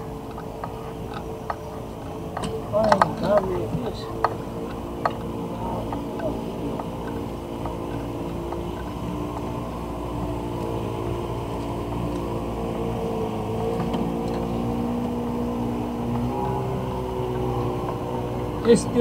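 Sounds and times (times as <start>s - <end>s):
faint clicks: 0.0s - 18.8s
engine running steadily: 0.0s - 19.0s.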